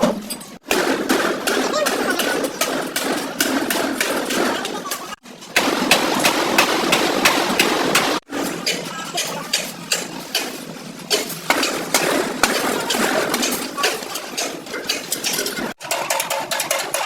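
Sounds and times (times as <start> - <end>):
metallic clanks and taps: 8.6 - 17.0.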